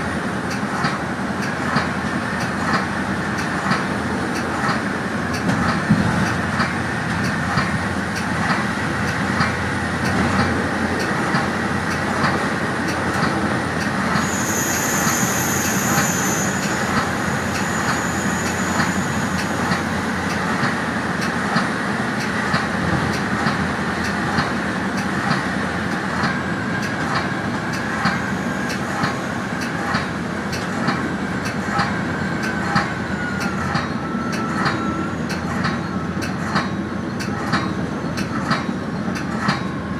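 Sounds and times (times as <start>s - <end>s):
train wheels rumbling on track: 0.0s - 39.9s
high-pitched squeal: 14.1s - 20.0s.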